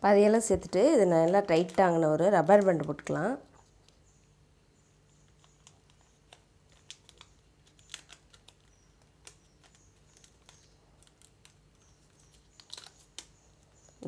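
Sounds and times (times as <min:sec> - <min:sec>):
plastic packet crinkling: 0:00.0 - 0:04.1, 0:05.0 - 0:14.0.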